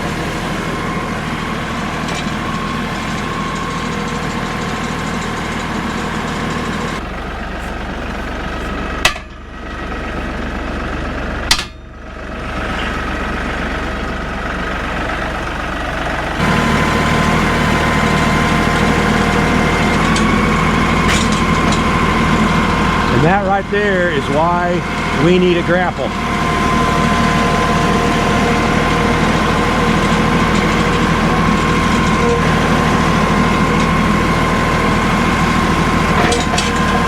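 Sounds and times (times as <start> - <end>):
tractor diesel engine running: 0.0 - 37.0.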